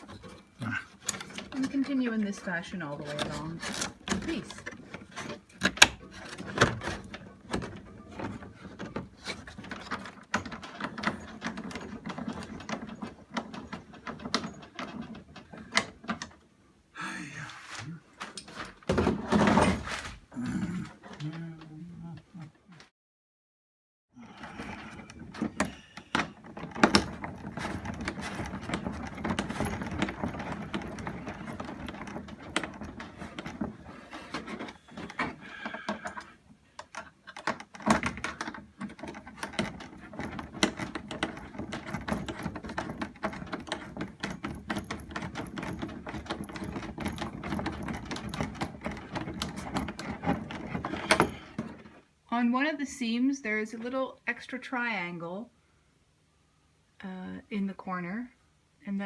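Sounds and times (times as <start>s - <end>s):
handling noise: 0.0s - 16.5s, 24.4s - 52.1s.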